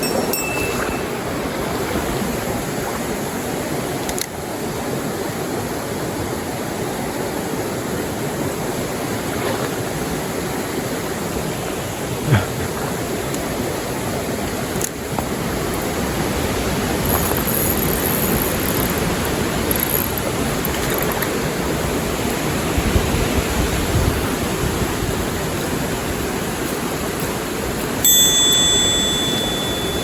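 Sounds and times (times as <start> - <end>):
high steady tone: 0.0 - 1.7, 28.0 - 30.0
stream water rushing: 0.0 - 30.0.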